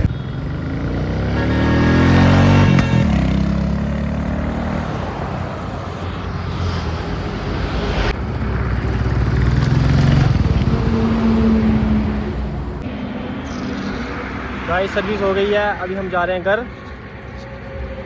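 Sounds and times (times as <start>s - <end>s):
motorcycle engine pulling away: 0.0s - 5.0s, 8.2s - 12.1s.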